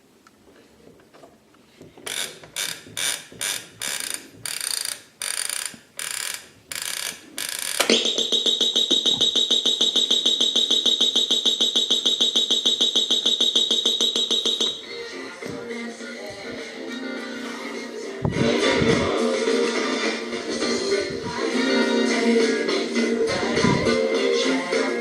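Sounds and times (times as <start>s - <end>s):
alarm clock buzzer: 2.1s - 15.0s.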